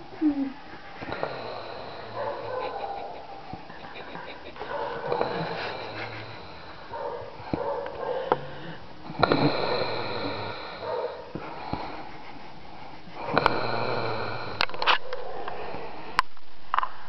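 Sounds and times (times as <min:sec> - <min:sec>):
soft breathing: 0:00.0 - 0:16.2
man snoring: 0:01.0 - 0:02.9, 0:04.3 - 0:07.0, 0:08.3 - 0:12.1, 0:13.2 - 0:14.9.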